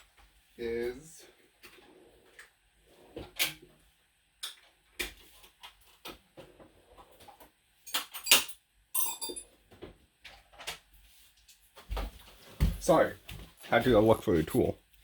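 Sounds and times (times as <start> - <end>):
ringing metallic clink: 7.9 - 9.4
tools clattering: 7.9 - 9.5.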